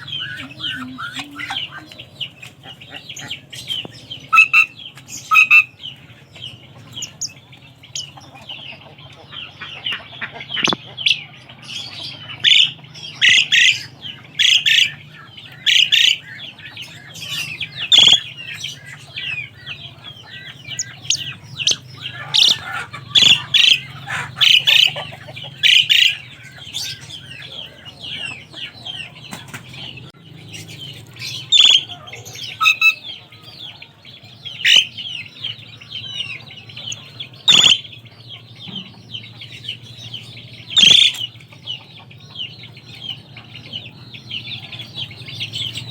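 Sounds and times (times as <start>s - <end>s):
loud sharp bird calls: 0.0s - 45.9s
starlings chattering: 0.0s - 45.9s.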